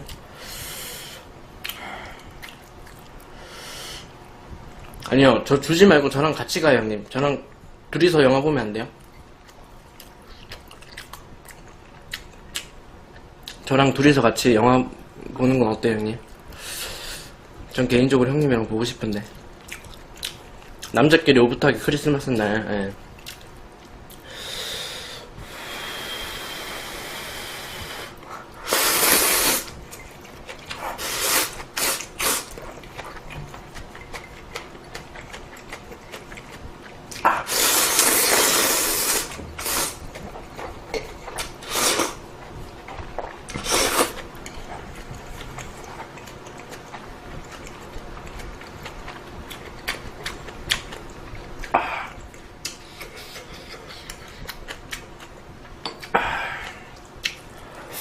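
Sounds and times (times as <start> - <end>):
chewing: 1.6 - 3.3, 9.0 - 13.6, 19.2 - 21.0, 23.2 - 24.2, 29.9 - 57.4
slurping noodles: 25.7 - 29.7, 30.7 - 32.6, 37.4 - 40.0, 41.6 - 42.2, 43.5 - 44.2.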